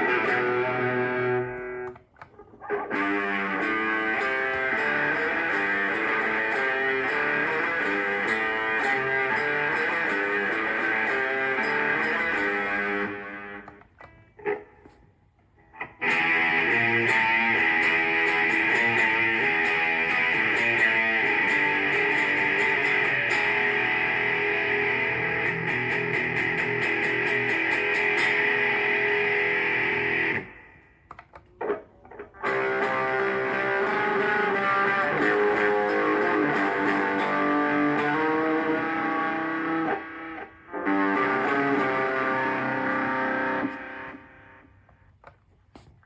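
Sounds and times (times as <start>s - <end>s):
electric guitar with effects: 0.0s - 46.0s
small clicks: 13.5s - 15.5s.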